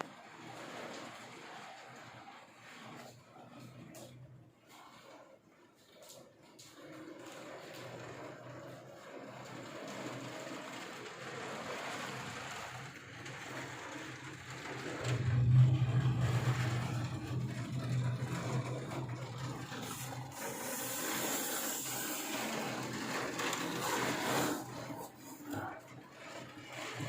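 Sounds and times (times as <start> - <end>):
low rumble: 14.9 - 20.4.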